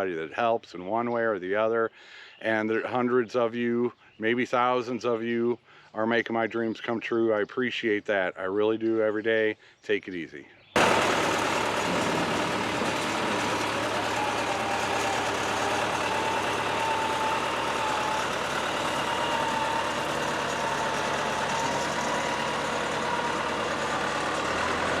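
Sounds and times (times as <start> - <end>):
backhoe engine running: 10.8 - 25.0.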